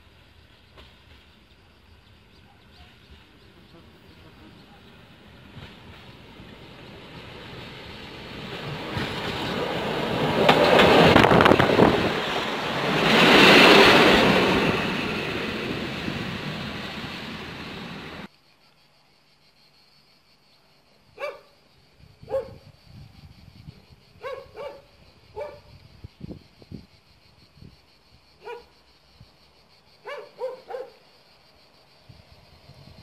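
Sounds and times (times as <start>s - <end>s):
loud rushing noise: 8.6s - 18.3s
dog barking: 21.2s - 21.5s, 22.3s - 22.6s, 24.2s - 25.7s, 28.4s - 28.7s, 30.0s - 31.0s.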